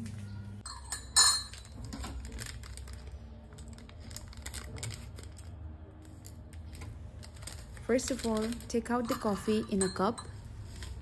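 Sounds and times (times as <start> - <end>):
sachet crinkling and clicks: 1.6 - 9.0.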